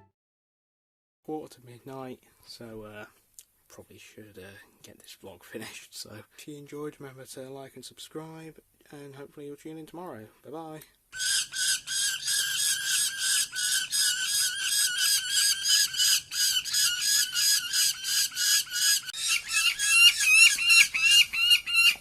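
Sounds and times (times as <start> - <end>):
bird calling in pitched notes: 11.2 - 22.0.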